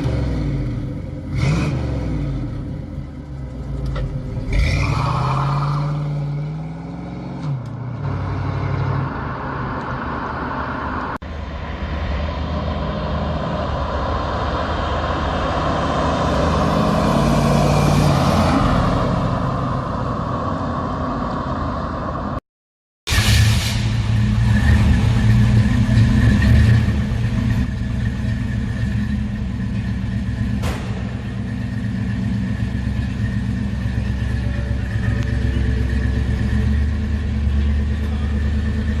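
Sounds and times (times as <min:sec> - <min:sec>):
car engine revving and running: 0:00.0 - 0:22.4, 0:23.1 - 0:39.0.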